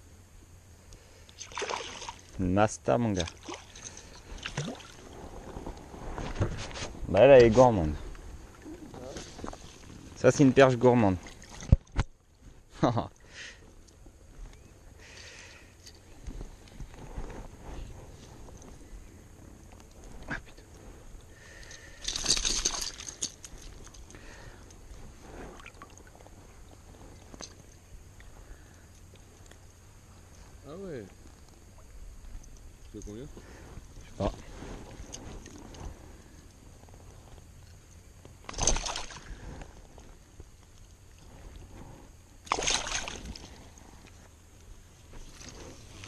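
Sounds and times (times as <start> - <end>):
water sloshing and splashing: 1.4 - 2.4, 3.2 - 6.8, 11.0 - 12.1, 25.5 - 26.3, 38.5 - 39.4, 42.4 - 43.6
crackly rustling and clicks: 15.8 - 38.7, 39.3 - 42.1.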